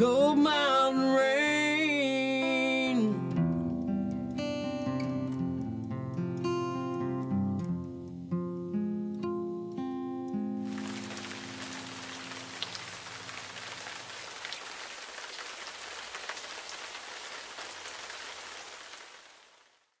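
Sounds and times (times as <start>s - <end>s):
guitar chord ringing: 0.0s - 12.8s
steady rain falling: 10.6s - 20.0s.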